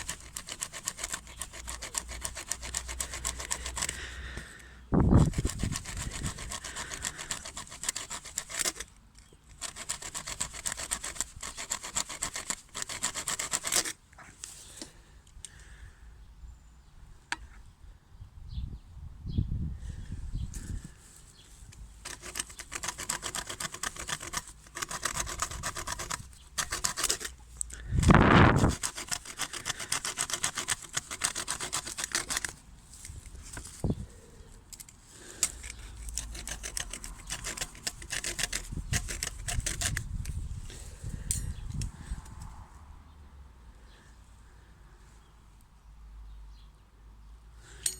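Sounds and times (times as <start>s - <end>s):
hacksaw cutting steel: 0.0s - 4.1s, 5.2s - 14.0s, 22.0s - 33.1s, 34.8s - 40.3s.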